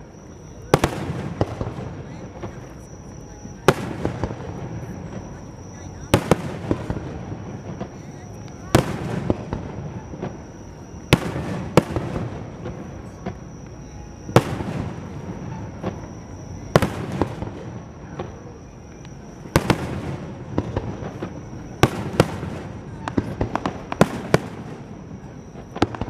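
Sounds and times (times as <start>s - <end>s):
fireworks crackling: 0.0s - 26.0s
small fireworks pops: 0.6s - 26.0s
fireworks bangs: 0.7s - 2.8s, 3.5s - 26.0s.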